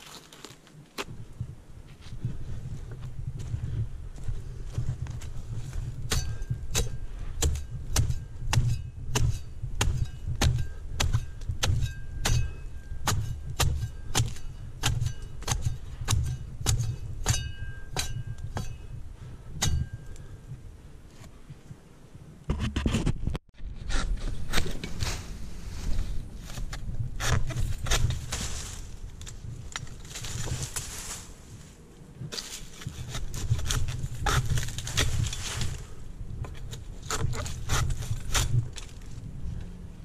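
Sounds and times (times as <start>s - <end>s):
metal blade chopping palm fronds: 6.1s - 18.8s, 26.5s - 28.9s, 32.3s - 35.9s, 36.6s - 39.2s.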